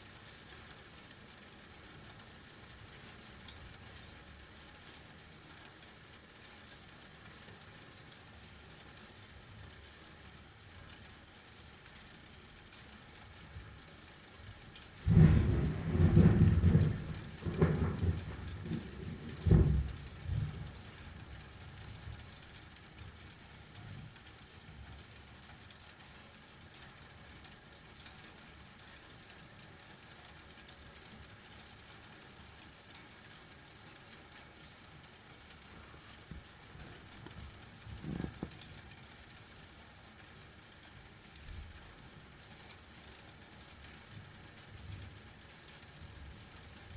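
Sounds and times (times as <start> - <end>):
rain hissing: 14.8 - 46.9
thunder rumbling: 15.0 - 21.6, 36.7 - 38.6.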